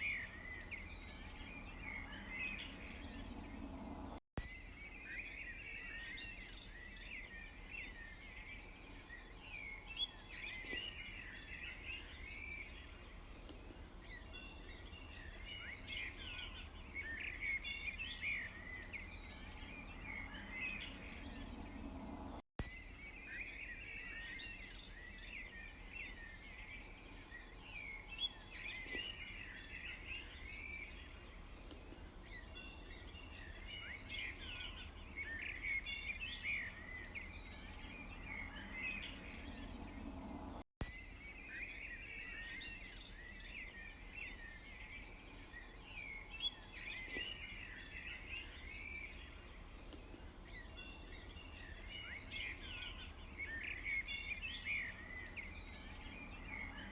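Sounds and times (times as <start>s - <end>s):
songbirds chirping: 0.0s - 56.9s
faint low rumble: 0.5s - 4.2s, 17.8s - 22.4s, 35.9s - 40.6s.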